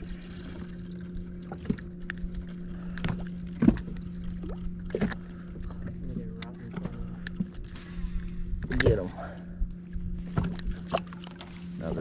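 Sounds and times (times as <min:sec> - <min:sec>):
knocks and splashes: 0:00.0 - 0:07.6, 0:10.2 - 0:11.6
boat motor humming: 0:00.0 - 0:12.0.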